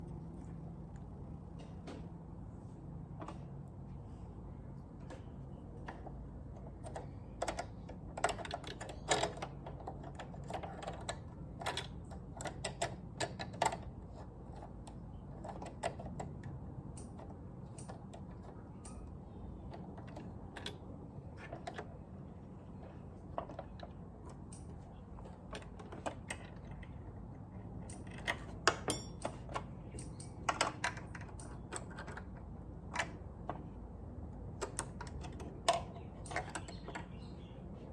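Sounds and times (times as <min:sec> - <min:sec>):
steady low hum: 0:00.0 - 0:37.9
clicks and taps of machine parts: 0:05.0 - 0:20.8, 0:27.8 - 0:33.7.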